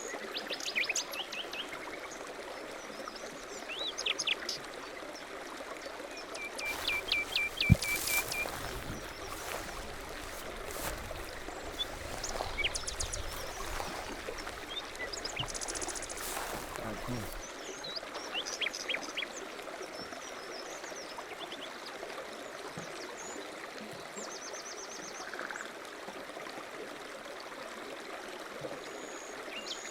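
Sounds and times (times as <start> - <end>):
small birds chirping and singing: 6.7 - 17.4.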